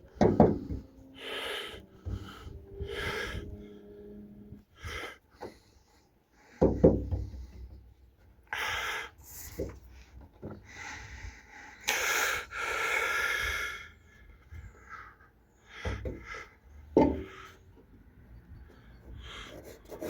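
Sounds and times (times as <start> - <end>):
person breathing out: 10.7 - 14.0.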